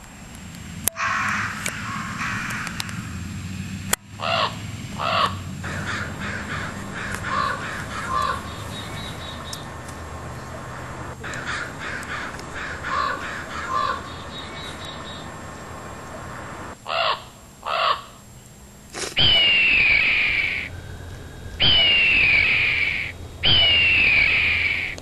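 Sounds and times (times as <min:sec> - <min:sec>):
crows cawing: 0:00.9 - 0:03.2, 0:04.2 - 0:09.8, 0:10.7 - 0:15.4, 0:16.8 - 0:18.2, 0:19.2 - 0:25.0.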